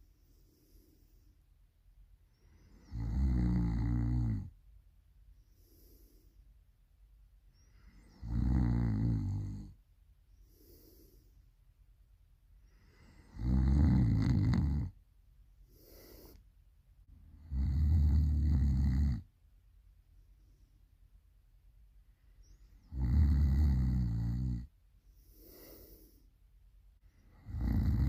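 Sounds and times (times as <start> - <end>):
loud rasping snoring: 2.8 - 4.5, 8.1 - 9.7, 13.2 - 15.0, 17.4 - 19.2, 22.9 - 24.7, 27.4 - 28.0.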